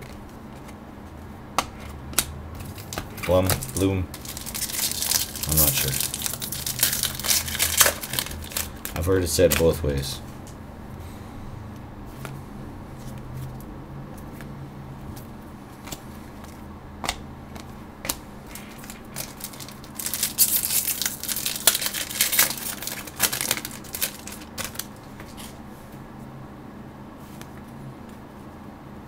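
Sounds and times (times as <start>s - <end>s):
steady low hum: 0.0s - 29.0s
foil wrapper crinkling and tearing: 2.6s - 10.1s, 18.5s - 25.6s.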